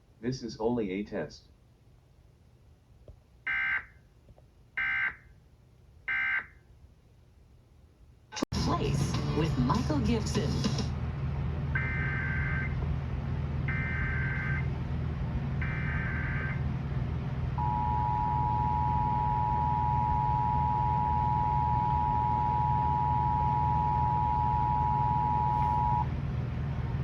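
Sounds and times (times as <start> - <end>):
two-tone attention signal: 17.6 - 26.1.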